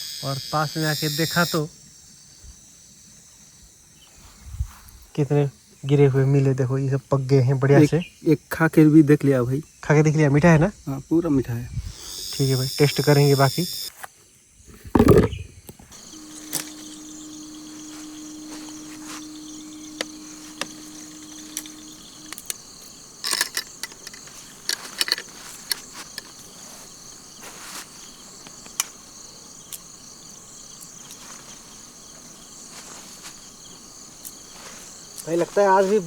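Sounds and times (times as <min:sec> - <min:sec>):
insects chirring: 0:00.0 - 0:36.0
steady low hum: 0:15.2 - 0:36.0
clicks and knocks: 0:23.2 - 0:26.4.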